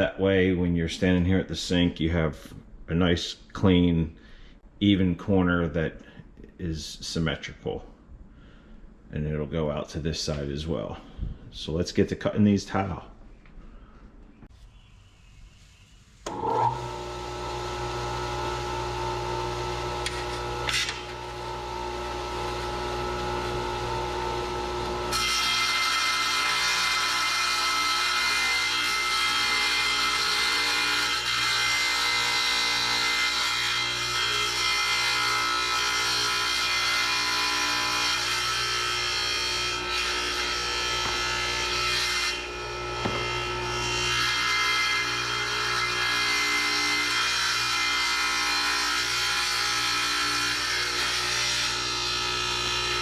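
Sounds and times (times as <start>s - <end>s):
tile saw cutting stone: 16.2s - 53.0s.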